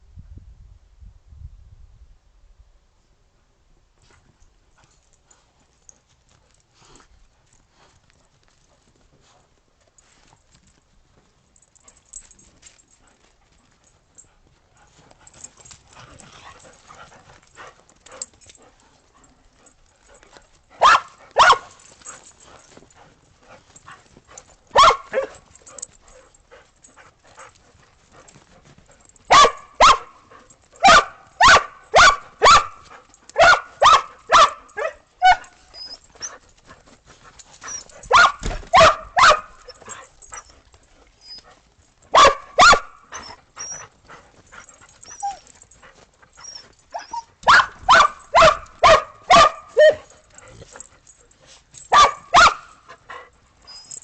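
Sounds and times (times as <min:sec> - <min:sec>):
faint rustling: 0:04.0 - 0:29.3
dogs barking: 0:20.8 - 0:21.8, 0:24.7 - 0:25.8, 0:29.3 - 0:30.2, 0:30.8 - 0:32.8, 0:33.4 - 0:35.5, 0:38.1 - 0:39.7, 0:42.2 - 0:43.0, 0:47.4 - 0:50.3, 0:51.9 - 0:52.8.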